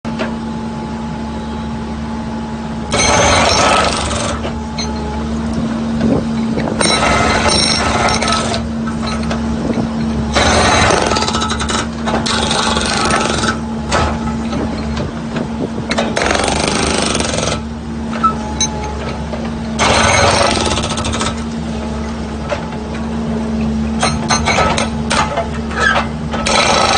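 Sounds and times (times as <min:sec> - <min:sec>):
engine humming: 0:00.1 - 0:26.9
hydraulic breaker hammering: 0:02.9 - 0:05.1, 0:06.6 - 0:09.3, 0:10.3 - 0:14.4, 0:15.9 - 0:17.6, 0:19.8 - 0:21.4, 0:26.3 - 0:26.9.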